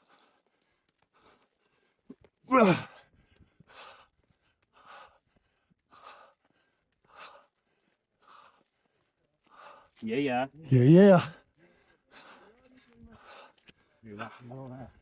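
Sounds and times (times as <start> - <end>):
man sighing loudly: 10.7 - 11.3.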